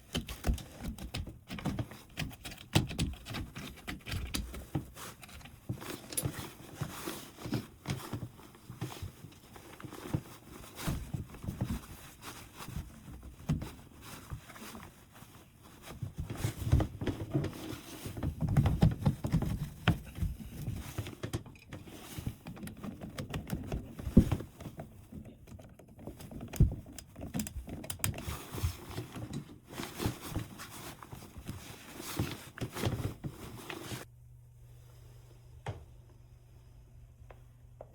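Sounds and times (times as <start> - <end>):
hands and tools tapping and knocking: 0.0 - 6.4.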